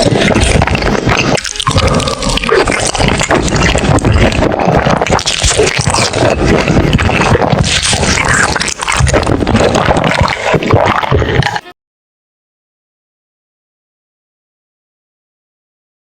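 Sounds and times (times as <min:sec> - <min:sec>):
small crackles: 0:00.0 - 0:11.7
wet chewing of fried food: 0:00.0 - 0:11.7.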